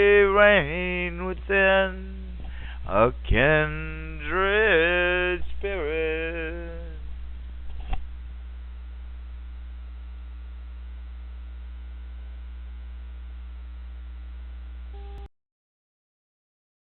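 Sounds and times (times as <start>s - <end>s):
mains hum with faint hiss: 0.0s - 15.3s.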